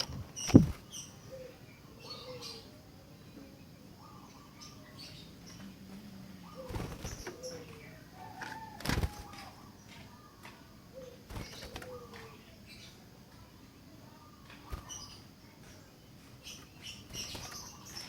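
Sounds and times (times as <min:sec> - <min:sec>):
sharp knocks: 0:00.0 - 0:00.8.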